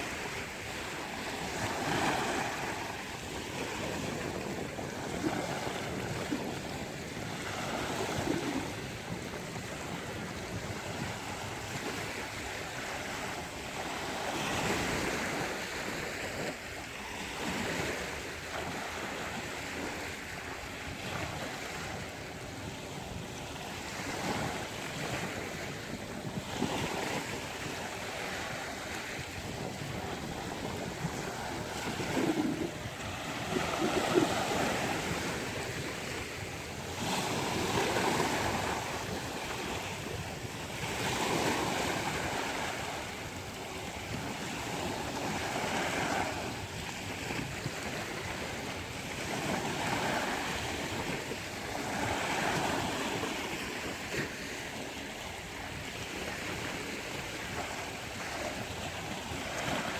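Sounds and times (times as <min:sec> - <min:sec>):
sea waves breaking on beach: 0:00.0 - 0:59.9
wind: 0:00.0 - 0:59.9.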